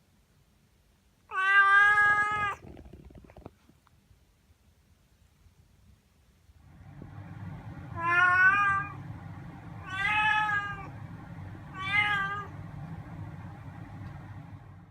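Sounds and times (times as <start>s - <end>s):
cat meowing: 1.3s - 2.6s, 8.0s - 9.0s, 9.8s - 10.9s, 11.7s - 12.5s
steady low hum: 6.4s - 14.9s.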